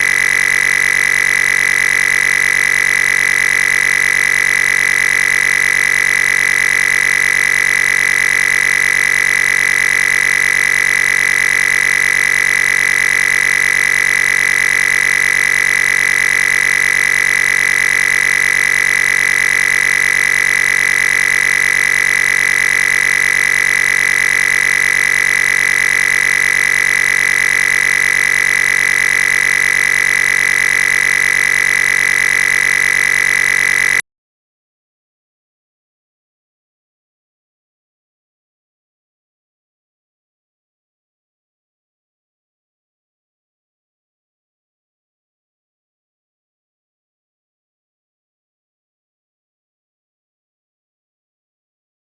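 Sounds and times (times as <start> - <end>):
high-pitched electronic tone: 0.0 - 34.0.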